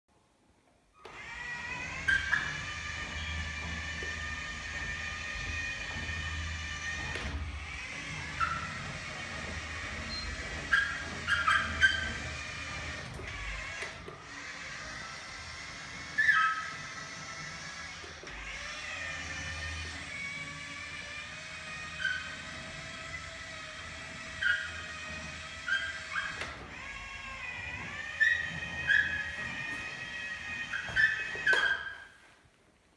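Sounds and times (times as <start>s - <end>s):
motor whine: 1.0s - 32.0s
caster wheel squeaks: 1.8s - 3.3s, 9.8s - 13.0s, 16.2s - 16.8s, 30.7s - 32.1s.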